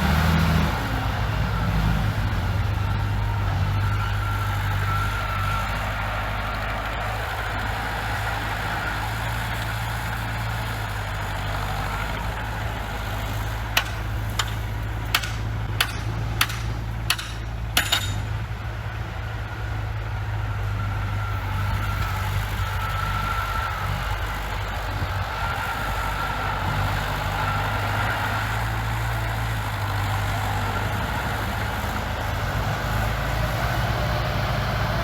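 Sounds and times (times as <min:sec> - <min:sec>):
diesel engine running: 0:00.0 - 0:35.0
sharp knocks: 0:13.8 - 0:18.3.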